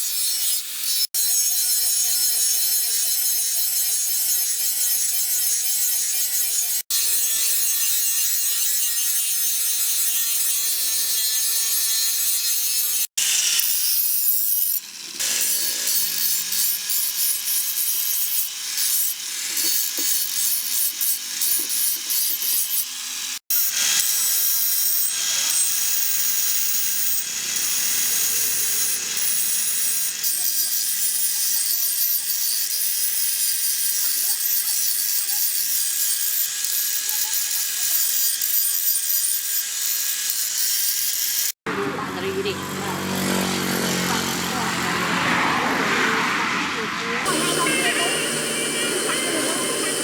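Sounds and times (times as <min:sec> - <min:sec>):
tool rasping on steel: 0:00.0 - 0:41.6.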